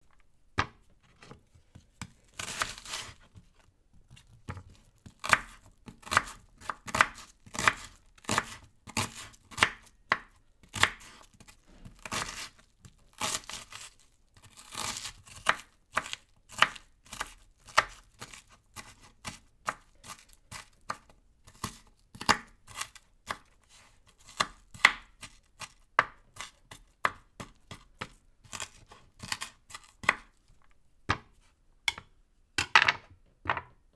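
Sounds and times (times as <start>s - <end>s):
knife chopping vegetables: 0.6s - 33.7s.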